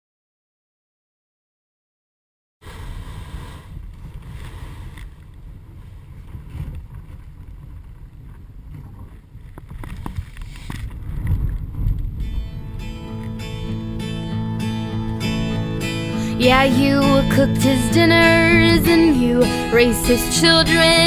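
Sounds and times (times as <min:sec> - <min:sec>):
wind buffeting microphone: 0:02.8 - 0:12.9.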